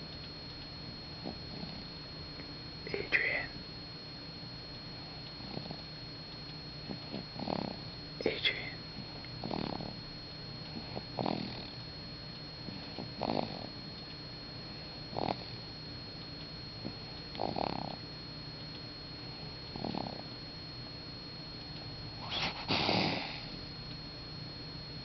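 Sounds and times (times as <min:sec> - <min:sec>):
baby snoring: 0:05.4 - 0:05.9, 0:06.9 - 0:08.8, 0:09.4 - 0:10.0, 0:10.8 - 0:11.8, 0:12.9 - 0:13.7, 0:15.1 - 0:15.5, 0:17.4 - 0:18.0, 0:19.8 - 0:20.2, 0:22.2 - 0:23.6.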